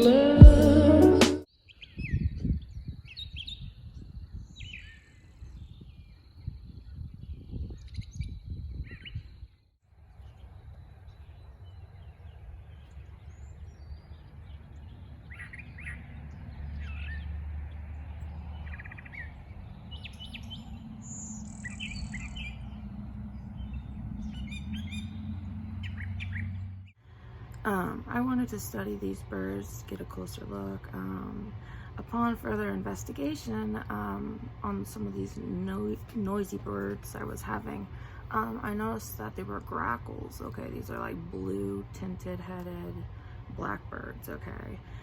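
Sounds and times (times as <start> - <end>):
low steady rumble: 10.9 - 45.0.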